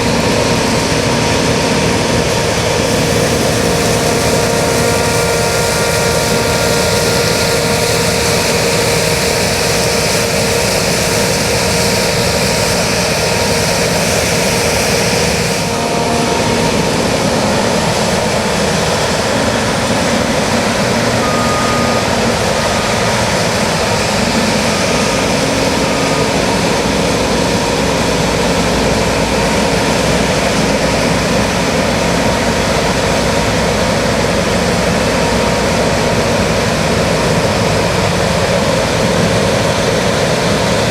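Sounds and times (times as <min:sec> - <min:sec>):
high hiss: 0:00.0 - 0:33.8
combine harvester running: 0:00.0 - 0:40.9
faint short beeps: 0:21.1 - 0:26.8.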